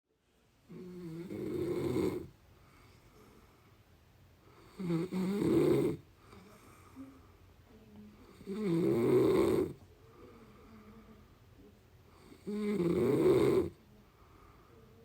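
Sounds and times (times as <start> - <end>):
quiet breathing: 0.1 - 15.0
person snoring: 0.7 - 2.3, 4.6 - 6.0, 8.4 - 9.8, 12.3 - 13.8.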